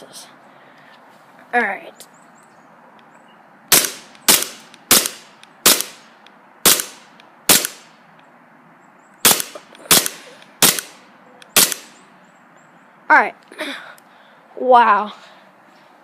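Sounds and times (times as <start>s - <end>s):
airsoft pistol shots: 3.7s - 6.0s, 6.6s - 7.8s, 9.2s - 11.0s, 11.6s - 11.9s.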